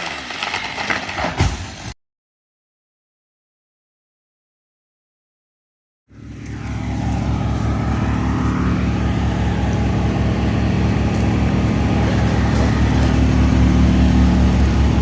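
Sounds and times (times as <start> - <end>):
large engine running steadily: 6.1 - 15.0.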